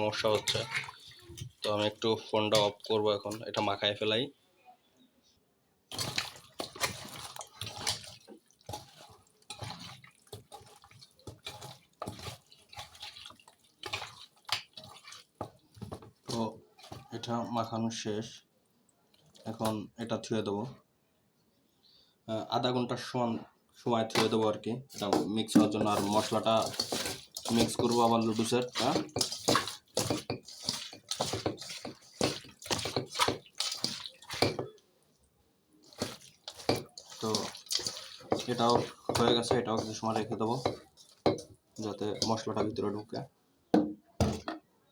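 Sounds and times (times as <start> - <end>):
wet squishing and squelching: 0.0 - 3.8, 5.9 - 17.8, 18.6 - 19.9, 24.2 - 42.7.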